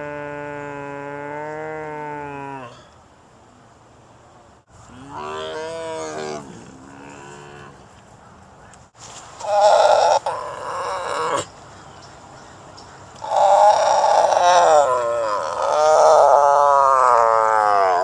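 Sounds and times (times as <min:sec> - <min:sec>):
tiger moaning call: 0:05.1 - 0:07.8, 0:09.4 - 0:11.5, 0:13.2 - 0:18.0
tiger roaring: 0:05.1 - 0:07.8, 0:13.2 - 0:18.0.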